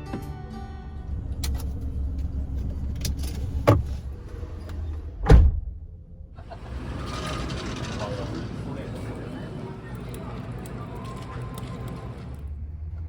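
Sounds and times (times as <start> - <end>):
low rumble: 0.8 - 6.6
car door shutting: 3.1 - 4.1, 5.2 - 5.7.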